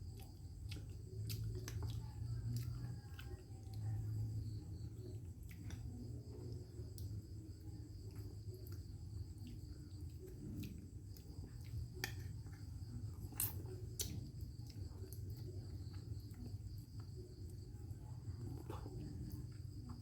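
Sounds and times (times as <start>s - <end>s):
crickets chirring: 0.0s - 20.0s.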